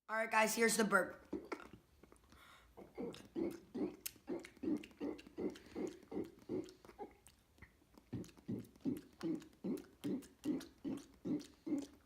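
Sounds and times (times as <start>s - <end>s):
long guttural burp: 2.8s - 7.2s, 8.5s - 11.9s.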